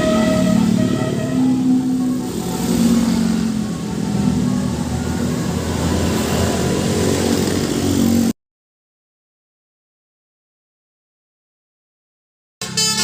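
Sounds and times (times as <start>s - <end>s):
bus engine accelerating: 0.0s - 8.3s.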